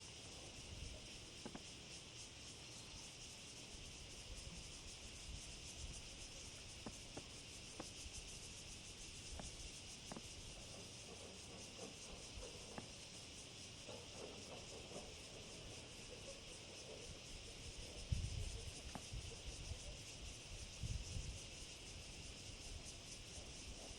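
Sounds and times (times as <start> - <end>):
insects chirring: 0.0 - 23.9
faint clicks: 1.4 - 1.7.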